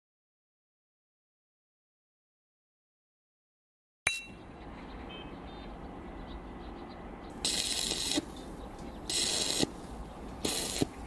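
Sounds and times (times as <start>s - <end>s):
sharp metallic clang: 4.1s - 4.4s
short burst of hiss: 10.4s - 11.0s.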